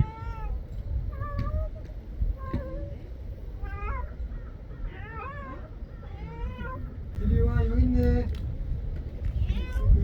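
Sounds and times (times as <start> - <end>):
cat meowing: 0.0 - 1.7, 3.6 - 4.2, 4.8 - 7.0, 9.4 - 10.0.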